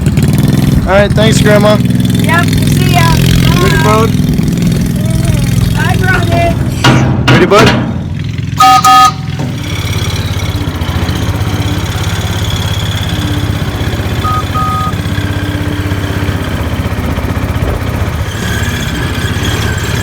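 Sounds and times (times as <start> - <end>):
small vehicle engine running: 0.0 - 20.0
two-note horn toot: 8.6 - 9.4.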